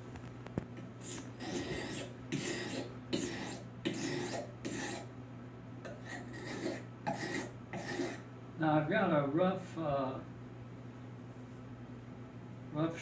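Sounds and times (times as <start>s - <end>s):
knife rasping on a sharpener: 1.0s - 5.1s, 5.9s - 8.2s.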